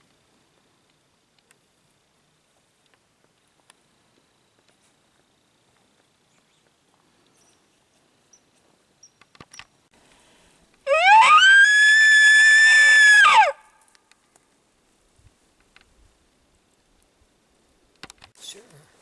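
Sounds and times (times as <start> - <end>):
elk bugle call: 10.9 - 11.8.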